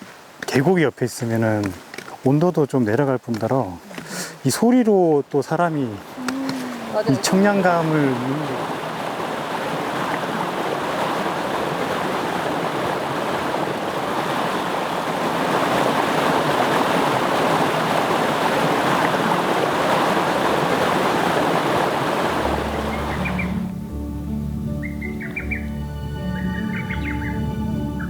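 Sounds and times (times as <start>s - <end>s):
stream rushing: 0.0s - 23.9s
soft music: 22.4s - 28.0s
bird chirps: 22.8s - 23.6s, 24.8s - 25.7s, 26.3s - 27.4s.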